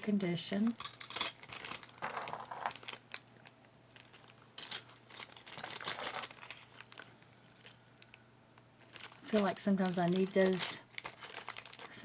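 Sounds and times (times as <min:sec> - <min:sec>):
metal clips rustling and clicking: 0:00.8 - 0:03.3, 0:04.0 - 0:06.8, 0:08.8 - 0:11.9.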